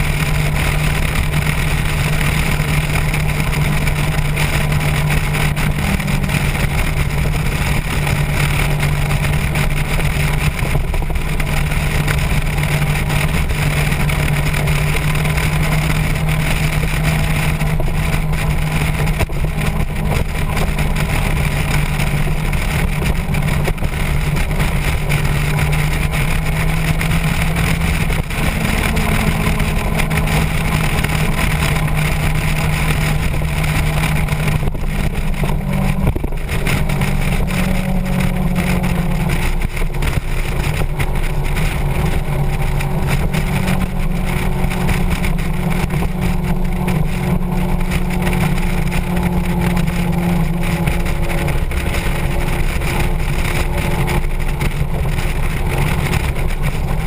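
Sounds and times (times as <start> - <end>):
motorcycle engine running: 0.0 - 57.0
wind rushing over microphone: 0.0 - 57.0.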